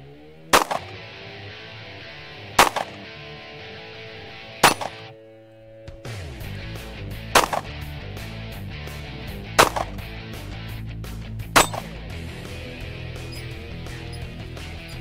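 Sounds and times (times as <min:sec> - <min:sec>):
pistol shots: 0:00.5 - 0:01.1, 0:02.6 - 0:03.3, 0:04.6 - 0:05.2, 0:07.2 - 0:08.0, 0:08.9 - 0:10.2, 0:11.6 - 0:12.2
background music: 0:00.5 - 0:15.0.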